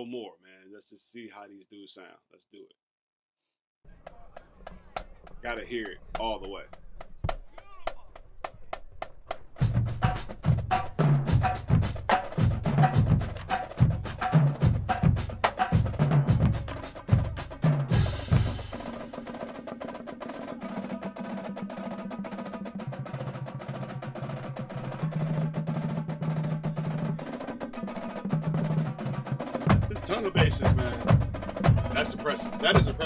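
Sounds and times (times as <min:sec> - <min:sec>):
marching snare drums: 0:04.1 - 0:33.0
bass drum notes: 0:09.6 - 0:19.0, 0:29.7 - 0:33.0.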